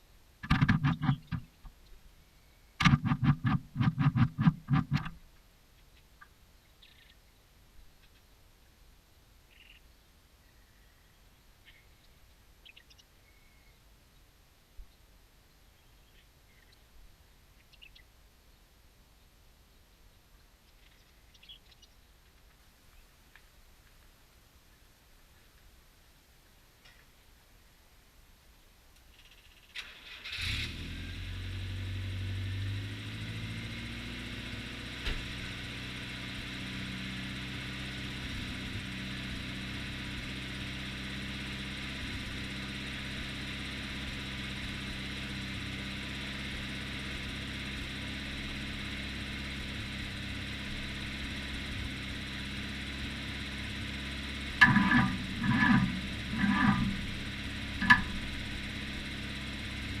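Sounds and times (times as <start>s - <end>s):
backhoe engine idling: 35.2s - 60.0s.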